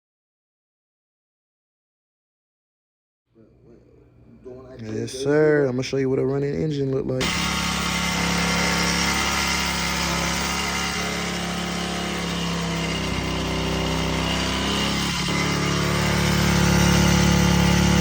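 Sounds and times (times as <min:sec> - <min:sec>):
engine idling and revving: 0:07.2 - 0:18.0.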